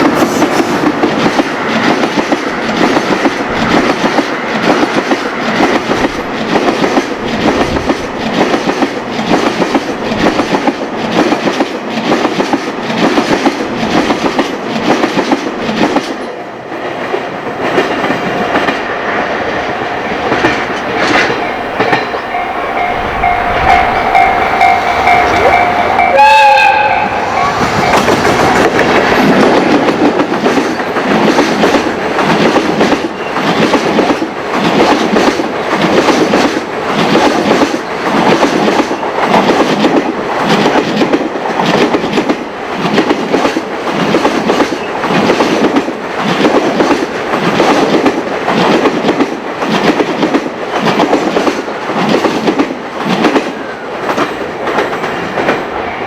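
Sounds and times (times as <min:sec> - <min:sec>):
train wagons clattering over rail joints: 0:00.0 - 0:16.4, 0:20.2 - 0:26.2, 0:26.8 - 0:55.7
train horn: 0:21.0 - 0:28.2.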